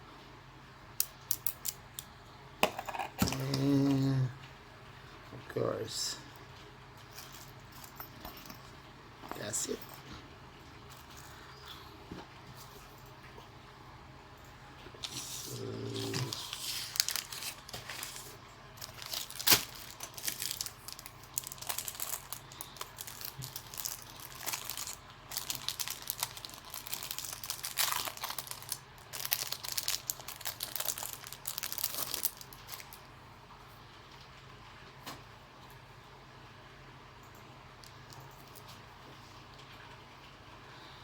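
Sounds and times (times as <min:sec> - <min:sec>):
plastic packaging crinkling: 0:15.0 - 0:33.0.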